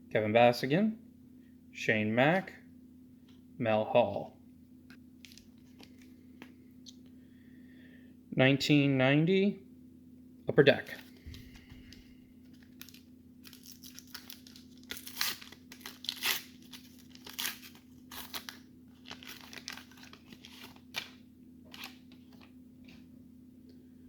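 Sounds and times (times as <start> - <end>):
wrapper tearing and crinkling: 12.5 - 22.4.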